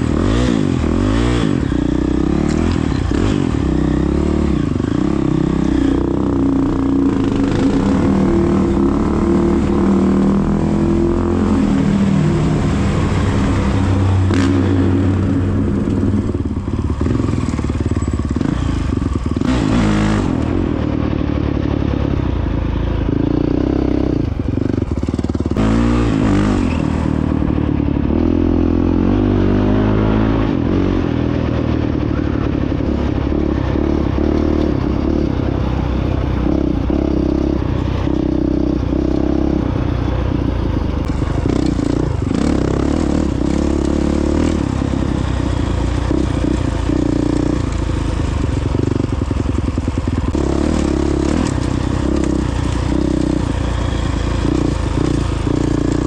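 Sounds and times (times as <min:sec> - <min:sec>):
dirt bike engine revving: 0:00.0 - 0:56.0
clatter over rough ground: 0:15.6 - 0:23.5, 0:31.3 - 0:56.0.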